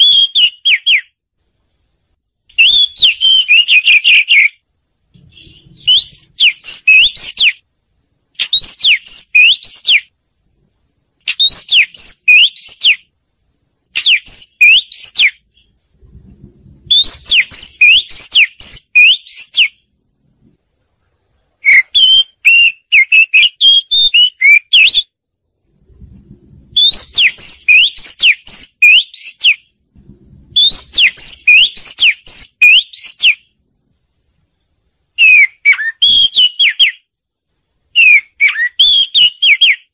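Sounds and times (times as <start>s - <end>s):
bird singing whistled phrases: 0.0s - 1.2s, 2.5s - 4.6s, 5.2s - 7.6s, 8.4s - 10.1s, 11.3s - 13.1s, 14.0s - 15.7s, 16.9s - 19.8s, 21.6s - 25.1s, 26.7s - 29.7s, 30.5s - 33.5s, 35.2s - 37.1s, 38.0s - 39.9s.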